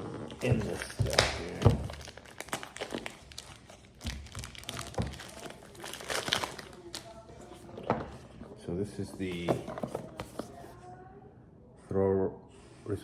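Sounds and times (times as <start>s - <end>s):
packaging crinkling and rustling: 0.0s - 8.5s.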